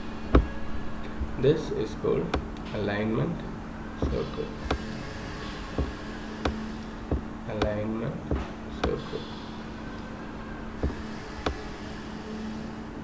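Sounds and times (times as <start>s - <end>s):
low electrical hum: 0.0s - 13.0s
sharp taps: 0.4s - 0.6s, 2.4s - 2.6s, 4.0s - 5.0s, 5.8s - 9.2s, 10.8s - 11.6s.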